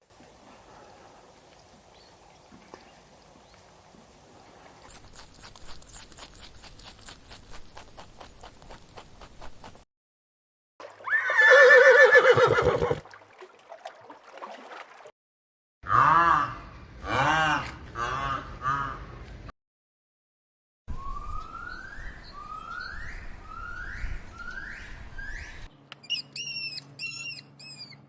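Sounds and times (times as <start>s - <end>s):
horse neighing: 10.8s - 13.2s
horse hooves clip-clopping: 10.8s - 13.6s.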